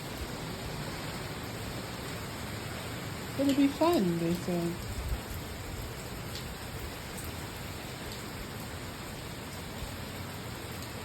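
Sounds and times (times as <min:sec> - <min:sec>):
heavy rain pouring: 0:00.0 - 0:11.0
raindrops ticking: 0:03.3 - 0:05.4.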